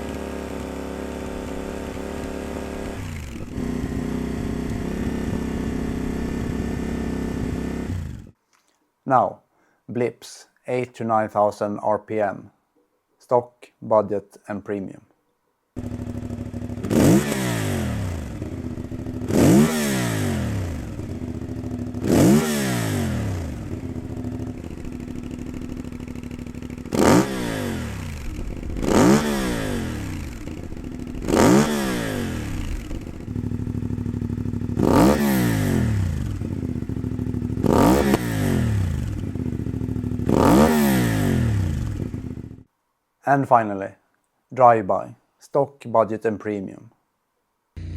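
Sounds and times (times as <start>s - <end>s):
motorcycle engine idling: 0.0s - 8.3s, 15.8s - 40.5s, 41.3s - 42.6s
motorcycle throttle blips: 0.0s - 8.3s, 15.8s - 42.6s.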